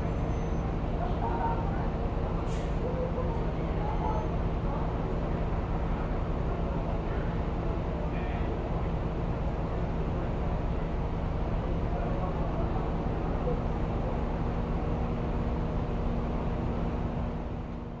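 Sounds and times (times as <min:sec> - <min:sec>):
faint voices: 0:00.0 - 0:15.4
traffic rumble: 0:00.0 - 0:18.0
engine hum: 0:04.4 - 0:18.0.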